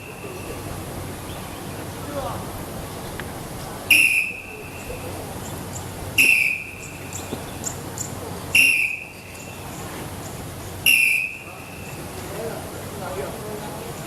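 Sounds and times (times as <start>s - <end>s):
whistle blasts: 3.9s - 5.0s, 6.2s - 7.0s, 8.5s - 9.4s, 10.8s - 11.9s.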